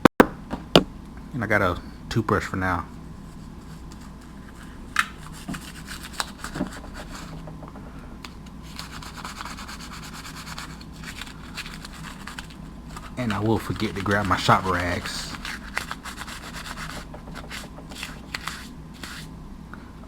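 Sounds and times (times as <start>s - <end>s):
toothbrush scrubbing metal parts: 3.4s - 7.4s, 8.6s - 19.3s.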